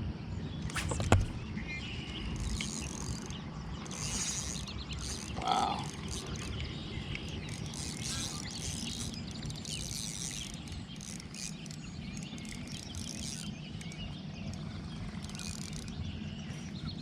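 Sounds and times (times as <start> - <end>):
birds chirping: 0.2 - 17.0.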